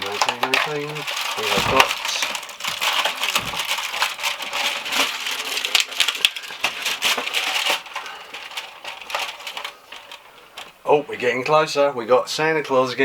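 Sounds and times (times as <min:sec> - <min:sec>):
cardboard and plastic crinkling: 0:00.0 - 0:10.9.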